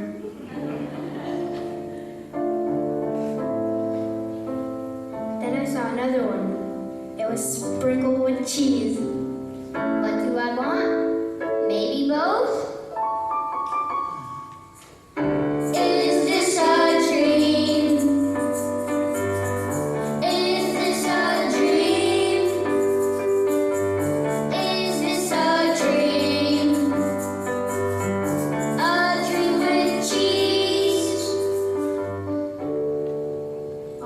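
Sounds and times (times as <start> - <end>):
keyboard and bass music: 15.3 - 34.0
young person singing: 15.7 - 18.6.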